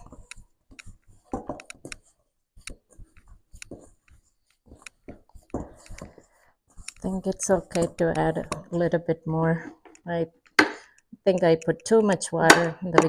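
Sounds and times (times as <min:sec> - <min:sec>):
hands kneading dough: 0:00.0 - 0:09.0.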